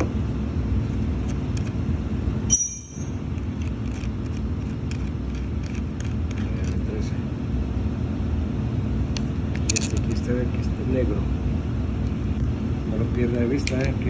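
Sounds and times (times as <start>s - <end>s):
high ringing clink: 2.5s - 3.3s.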